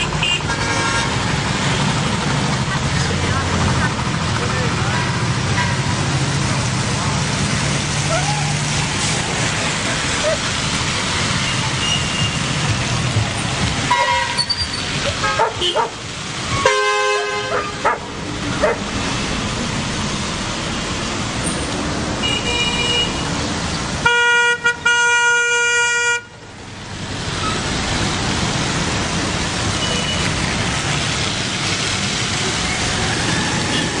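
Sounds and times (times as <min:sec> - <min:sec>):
car horn: 0:00.0 - 0:01.3, 0:11.4 - 0:12.7, 0:13.9 - 0:18.0, 0:22.2 - 0:23.3, 0:24.0 - 0:26.4, 0:29.8 - 0:30.4
road traffic: 0:00.0 - 0:34.0.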